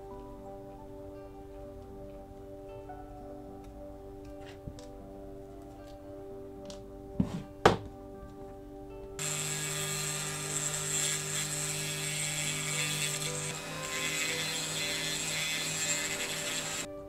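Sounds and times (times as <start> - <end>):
electric drill drilling: 9.2 - 16.9.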